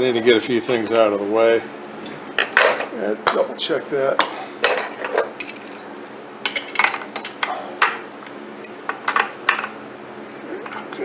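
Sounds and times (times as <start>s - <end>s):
metal tools clinking: 0.7s - 1.1s, 2.4s - 3.5s, 4.6s - 5.9s.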